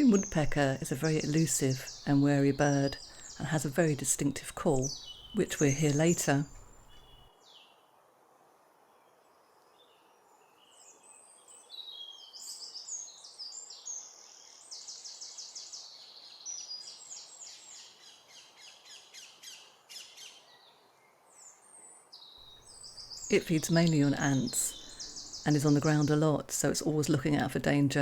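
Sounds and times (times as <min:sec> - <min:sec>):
songbirds trilling and chirping: 0:00.0 - 0:07.7, 0:21.3 - 0:28.0.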